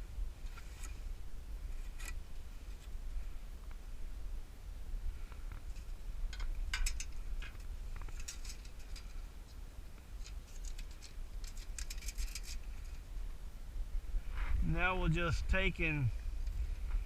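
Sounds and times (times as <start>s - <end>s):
dry nesting material crackling: 5.3s - 13.1s.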